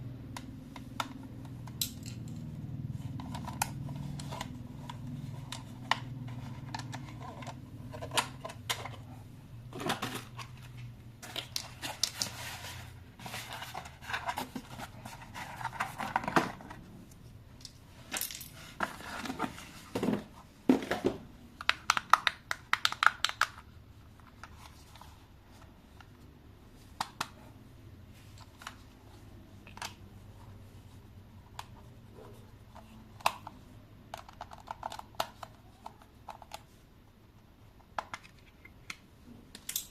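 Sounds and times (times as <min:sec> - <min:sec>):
plastic and cardboard rustling: 0:02.9 - 0:17.3, 0:18.0 - 0:21.2
clicks and taps: 0:21.6 - 0:23.6.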